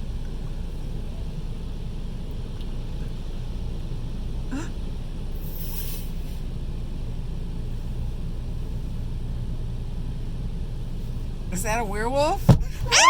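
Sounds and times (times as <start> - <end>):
car wash low rumble: 0.0 - 13.0
short high hiss: 5.4 - 6.4.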